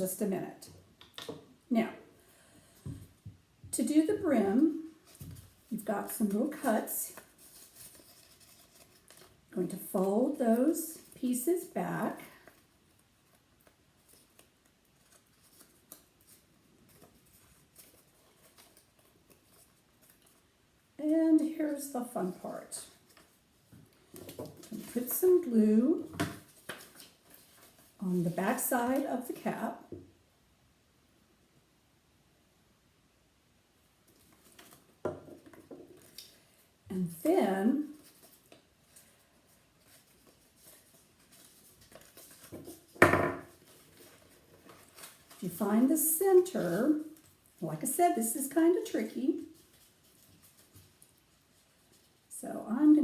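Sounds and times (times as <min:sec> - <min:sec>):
paper rustling and folding: 0:04.3 - 0:20.8, 0:21.4 - 0:29.7, 0:34.0 - 0:36.8, 0:37.6 - 0:47.6, 0:48.2 - 0:52.3
paper rustling and tapping: 0:26.0 - 0:27.9, 0:39.8 - 0:45.4.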